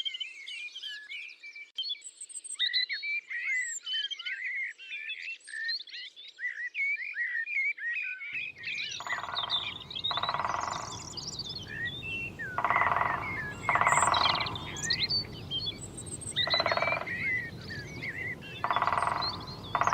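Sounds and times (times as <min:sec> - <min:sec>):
small birds chirping and singing: 0:08.4 - 0:19.9
frog croaking: 0:08.5 - 0:19.9
low background rumble: 0:08.6 - 0:19.9.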